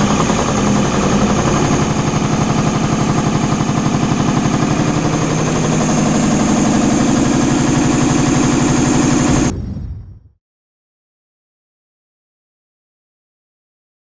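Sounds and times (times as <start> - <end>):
air compressor knocking: 0.0 - 9.5.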